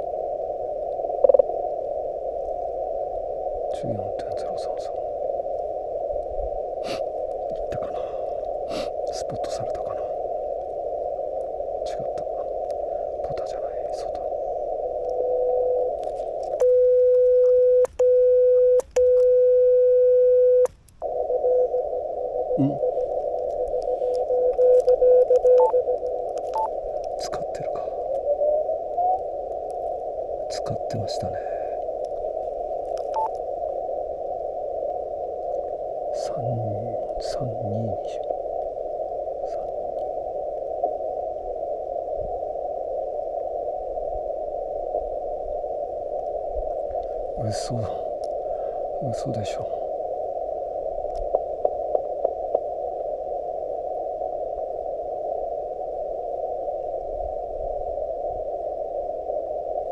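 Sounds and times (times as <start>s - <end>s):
radio receiver hiss: 0.0s - 59.9s
morse sidetone beeps: 16.6s - 21.8s, 22.5s - 26.0s.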